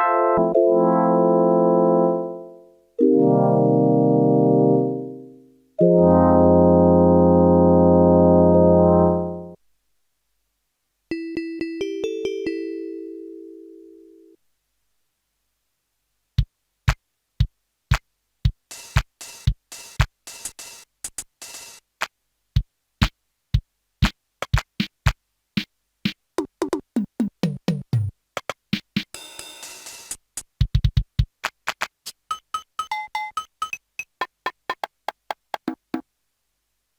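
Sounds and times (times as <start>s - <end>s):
drum machine pattern: 16.4s - 36.1s.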